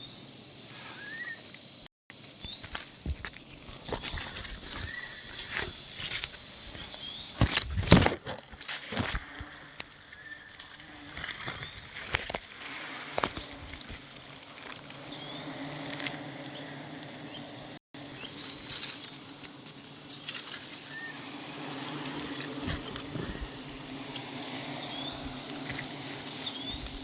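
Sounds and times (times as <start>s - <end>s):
bees buzzing: 0.7s - 27.0s
handling snaps and rustles: 10.6s - 12.5s.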